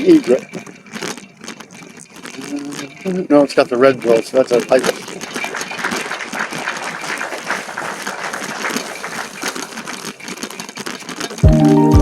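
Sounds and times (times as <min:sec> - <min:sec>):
bike tyres rattling on trail: 0:00.0 - 0:12.0
music: 0:11.4 - 0:12.0.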